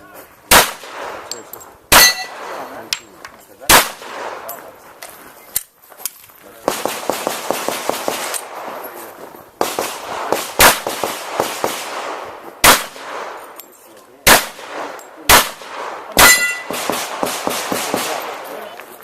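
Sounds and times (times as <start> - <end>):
bullet hitting steel target: 0.5 - 2.8, 16.2 - 16.9
pistol shots: 0.5 - 3.0, 3.6 - 4.7, 6.6 - 9.0, 9.6 - 13.6, 14.2 - 18.8.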